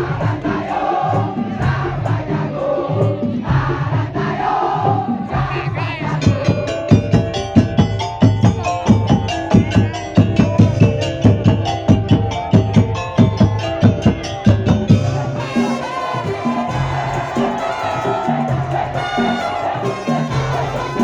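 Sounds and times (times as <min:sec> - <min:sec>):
wood block and drum percussion: 0:00.0 - 0:21.0
ringing pitched notes: 0:05.9 - 0:18.6.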